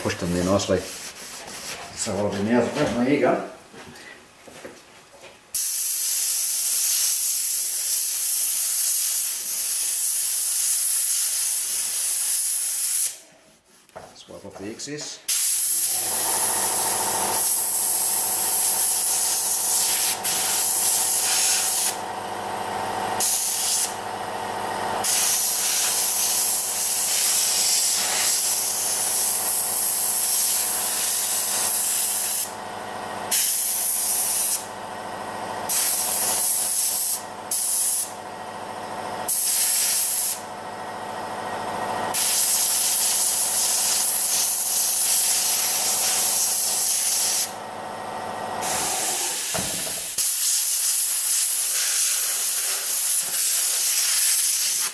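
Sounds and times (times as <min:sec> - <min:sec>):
compressed air blow gun hissing: 0:15.3 - 0:22.0, 0:23.2 - 0:24.0, 0:25.0 - 0:32.4, 0:39.3 - 0:40.4, 0:42.1 - 0:47.5, 0:48.6 - 0:54.9.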